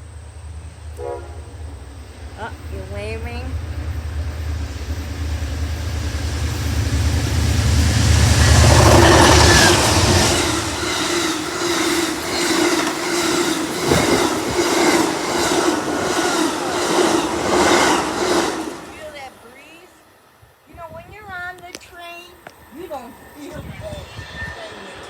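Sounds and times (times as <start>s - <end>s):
diesel locomotive rumble: 0.0s - 20.1s
steady train hum: 0.0s - 25.0s
train wheels clickety-clack: 2.4s - 19.4s.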